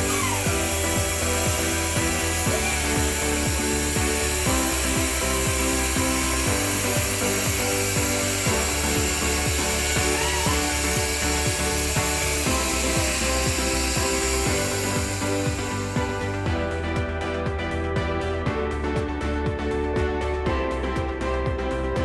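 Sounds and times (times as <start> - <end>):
plastic welding machine hissing: 0.0 - 16.5
background music: 0.0 - 22.0.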